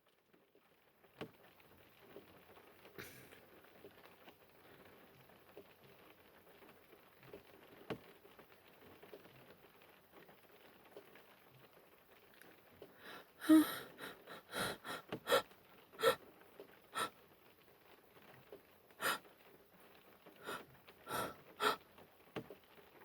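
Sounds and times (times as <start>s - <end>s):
faint room noise: 0.0s - 23.0s
quick sharp sniffs: 19.0s - 19.2s, 20.4s - 21.8s
woman sneezing: 20.4s - 21.8s.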